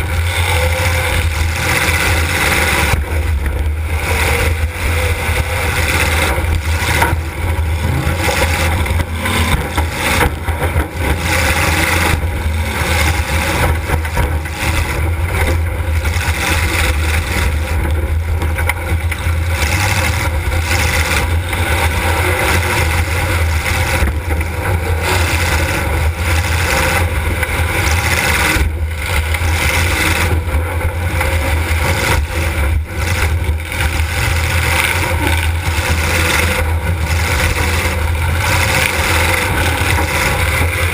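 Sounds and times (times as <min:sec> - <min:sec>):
car engine running loud: 0:00.0 - 0:40.9.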